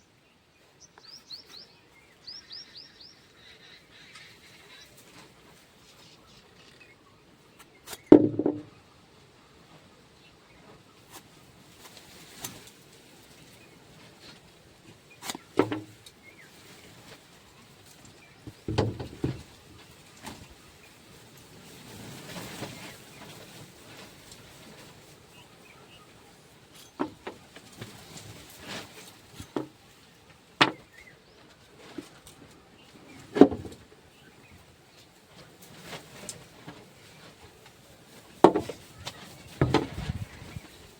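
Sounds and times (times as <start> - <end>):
knife and box handling knocks: 7.9 - 8.7, 38.5 - 38.8, 39.6 - 40.2
short rustle: 10.5 - 40.9.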